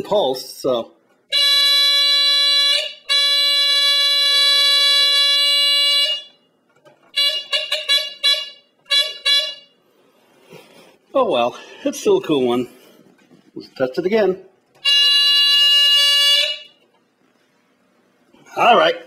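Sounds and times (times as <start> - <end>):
smoke alarm horn buzzing: 1.3 - 9.9, 14.8 - 17.0.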